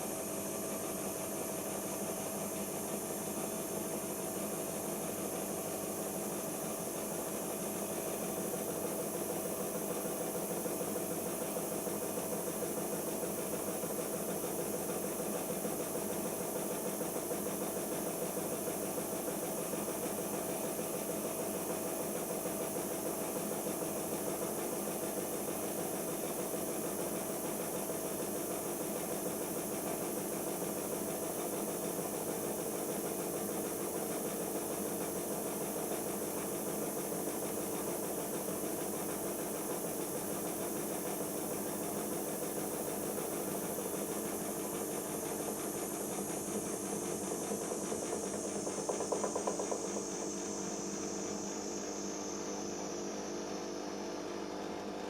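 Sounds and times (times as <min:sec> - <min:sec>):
washing machine spinning: 0:03.8 - 0:55.0.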